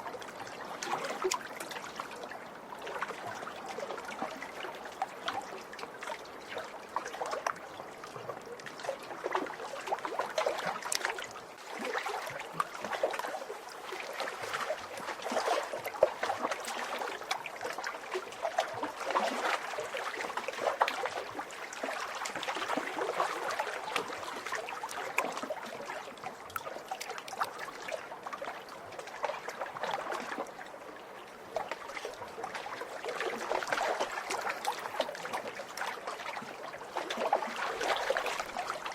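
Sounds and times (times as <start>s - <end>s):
small waves lapping and splashing: 0.0s - 38.9s.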